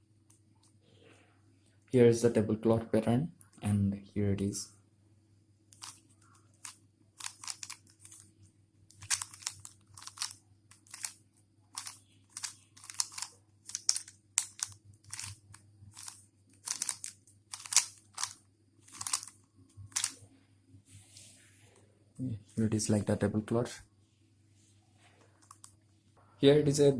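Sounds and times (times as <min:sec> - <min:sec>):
plastic puzzle cube clicking: 0:05.8 - 0:06.0, 0:06.6 - 0:08.2, 0:08.9 - 0:20.2.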